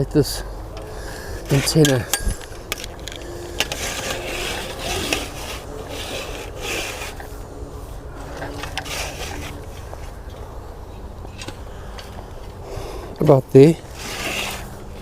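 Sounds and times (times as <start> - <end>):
rubbing and scraping handling noise: 0.8 - 10.3, 13.8 - 15.0.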